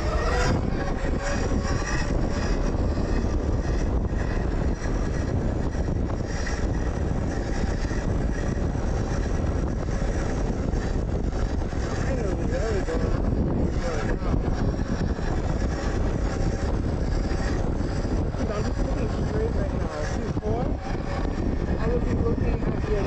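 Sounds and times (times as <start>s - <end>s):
electric dirt bike rumble: 0.0s - 23.0s
wind rush on microphone: 0.0s - 23.0s.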